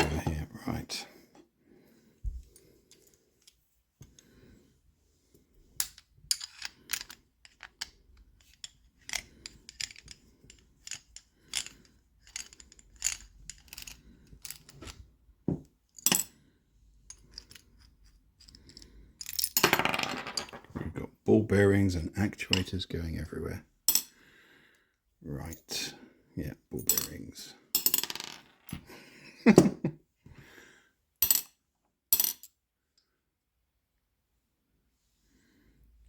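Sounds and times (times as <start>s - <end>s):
small steel parts clinking: 5.8s - 15.0s, 15.9s - 16.3s, 17.1s - 20.8s.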